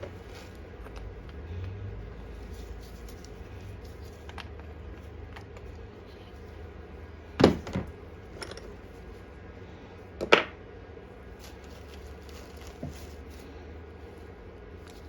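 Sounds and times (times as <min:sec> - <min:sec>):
faint clicks of parts handled: 0:00.0 - 0:01.8, 0:02.5 - 0:06.4, 0:14.6 - 0:15.0.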